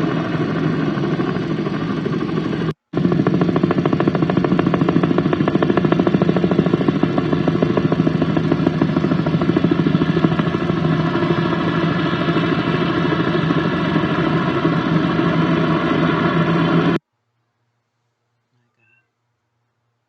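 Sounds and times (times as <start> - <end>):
helicopter engine tone: 0.0 - 17.0
helicopter rotor chopping: 0.0 - 17.0.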